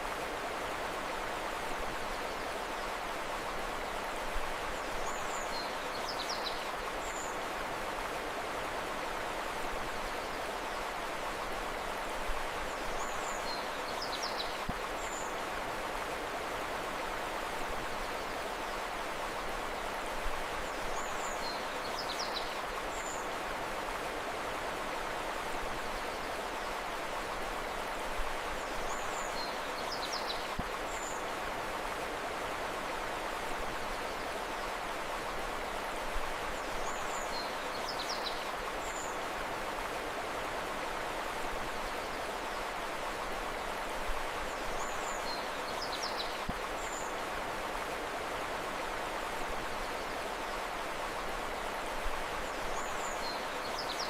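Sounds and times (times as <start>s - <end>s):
river flowing: 0.0s - 54.0s.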